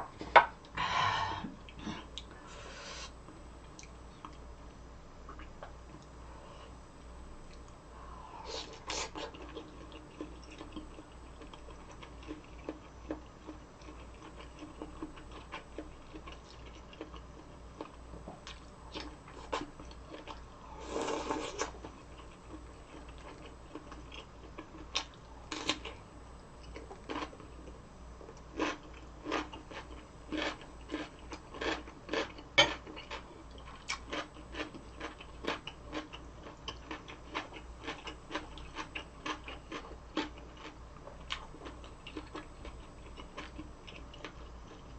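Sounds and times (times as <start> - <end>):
crunchy chewing: 8.6 - 26.0, 26.6 - 44.9.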